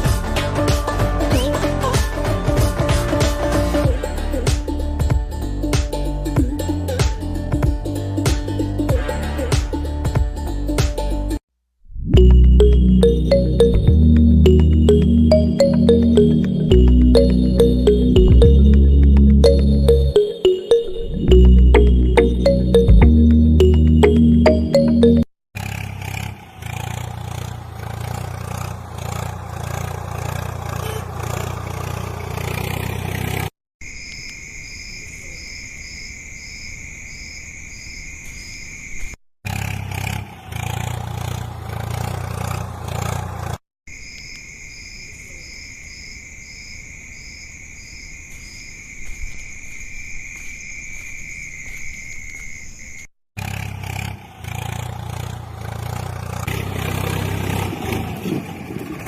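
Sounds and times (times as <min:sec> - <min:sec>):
steady high tone: 0:12.1 - 0:25.3
heavy diesel engine under load: 0:25.6 - 0:33.5, 0:39.5 - 0:43.6, 0:53.4 - 0:59.0.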